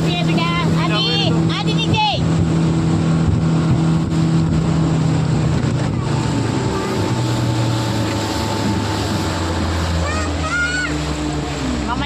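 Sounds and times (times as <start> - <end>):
motorboat engine running: 0.0 - 12.0
water rushing: 0.0 - 12.0
wind noise on microphone: 1.2 - 9.8.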